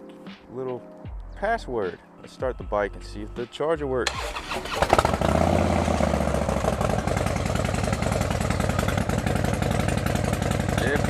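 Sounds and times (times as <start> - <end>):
motorcycle engine starting and idling: 4.1 - 11.0.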